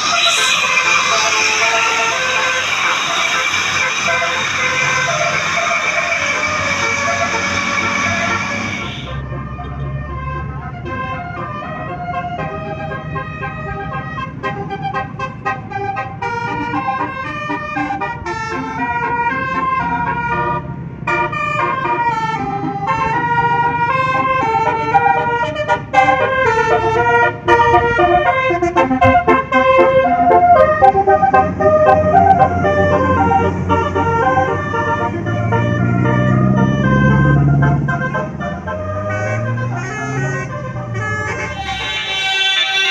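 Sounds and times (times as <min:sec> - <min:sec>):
bus engine hum: 0:00.0 - 0:42.9
musical bus horn melody: 0:00.0 - 0:42.9.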